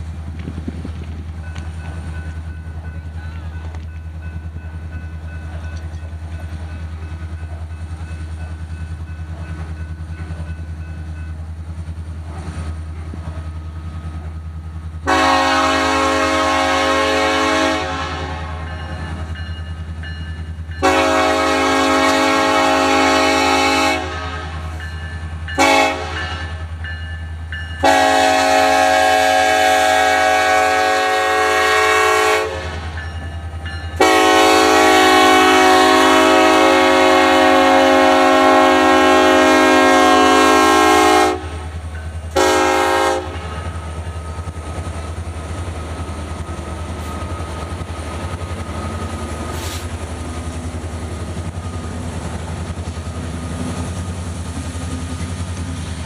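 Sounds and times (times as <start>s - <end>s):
train rumble: 0.0s - 56.0s
locomotive air horn blasts: 15.0s - 18.7s, 20.8s - 24.7s, 25.6s - 26.5s, 27.8s - 32.9s, 34.0s - 41.7s, 42.3s - 43.6s.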